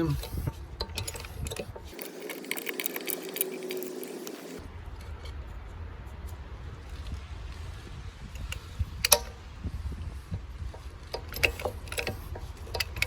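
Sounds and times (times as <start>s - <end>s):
metallic clicks from a press: 0.2s - 4.6s, 8.4s - 9.4s, 10.7s - 13.0s.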